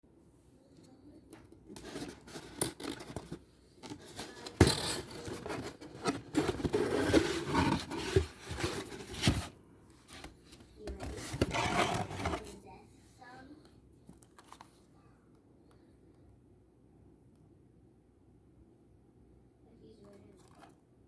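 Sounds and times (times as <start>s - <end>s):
packaging scraping and tearing: 1.7s - 9.5s, 11.0s - 12.6s.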